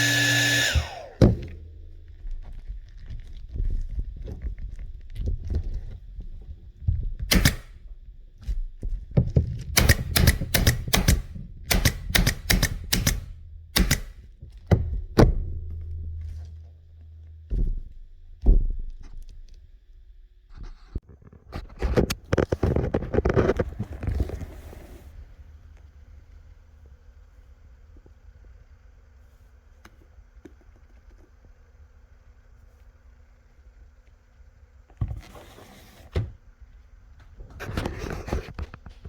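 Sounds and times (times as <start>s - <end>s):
low steady hum: 0.0s - 39.0s
pneumatic stapler firing: 7.3s - 7.8s, 9.7s - 14.3s.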